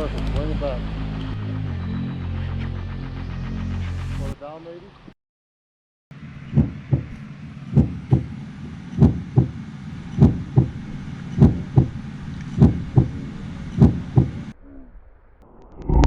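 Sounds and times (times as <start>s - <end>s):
heartbeat thumps: 6.5s - 8.3s, 9.0s - 9.6s, 10.2s - 10.8s, 11.4s - 12.0s, 12.6s - 14.5s.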